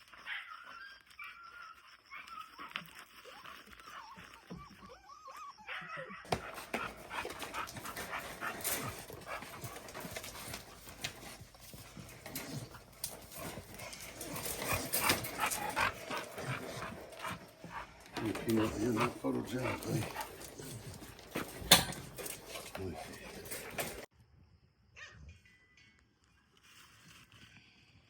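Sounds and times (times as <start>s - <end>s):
dog panting: 6.3s - 24.1s
handling scuffs and clicks: 6.3s - 24.1s.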